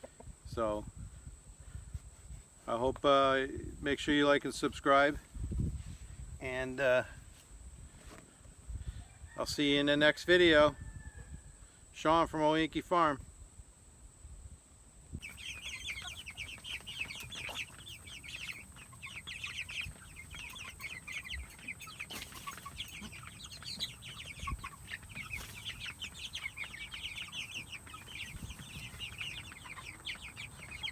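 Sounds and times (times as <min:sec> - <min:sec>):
chicks cheeping: 0:15.2 - 0:30.9.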